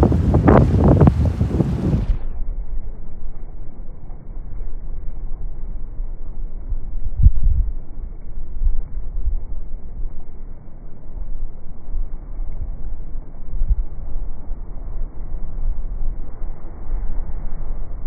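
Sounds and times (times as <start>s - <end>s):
sea waves crashing against wall: 0.0s - 2.2s
wind buffeting microphone: 0.0s - 18.0s.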